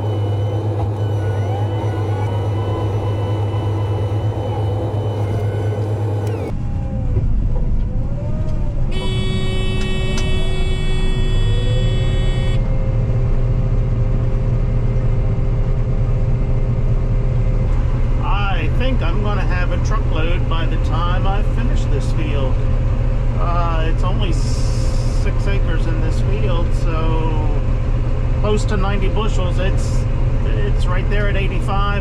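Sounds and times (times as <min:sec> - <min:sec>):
combine harvester running: 0:00.0 - 0:06.6, 0:09.0 - 0:32.0
high steady tone: 0:08.9 - 0:12.8.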